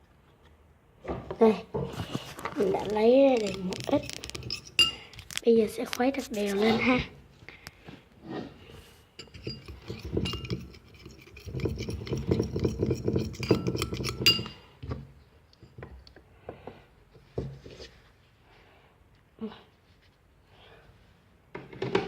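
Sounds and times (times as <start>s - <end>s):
utensil clinking against glass: 3.4s - 5.0s, 9.2s - 14.6s.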